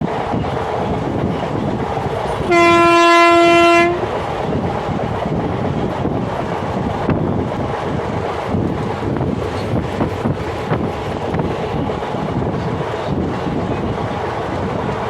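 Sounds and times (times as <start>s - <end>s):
running train noise: 0.0s - 15.0s
train horn blast: 2.4s - 4.1s.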